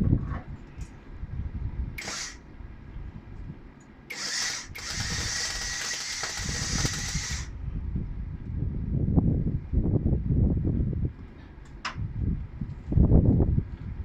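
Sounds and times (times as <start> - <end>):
cutting disc cutting steel: 2.0 - 2.4, 4.1 - 7.5.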